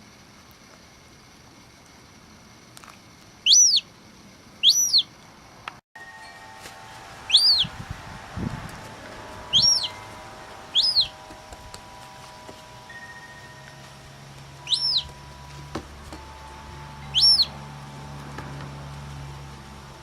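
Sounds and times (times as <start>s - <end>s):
faint steady hum: 0.0s - 20.0s
gull chick peeping: 3.4s - 3.8s, 4.6s - 5.1s, 7.2s - 7.8s, 9.5s - 10.0s, 10.6s - 11.8s, 14.6s - 17.8s.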